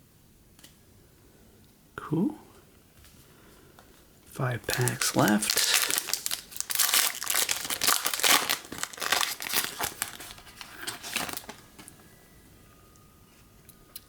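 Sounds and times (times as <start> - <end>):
card pack wrapper tearing and crinkling: 4.6 - 11.6.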